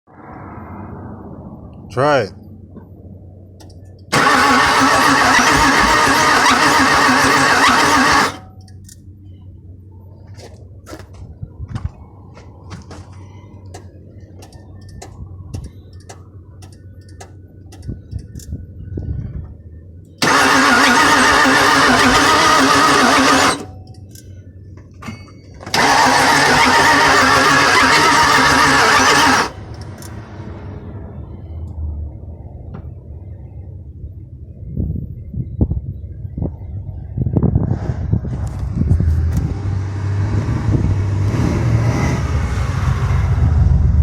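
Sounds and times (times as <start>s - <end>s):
car engine cranking on starter: 4.1s - 8.5s, 20.2s - 23.8s, 25.6s - 30.2s.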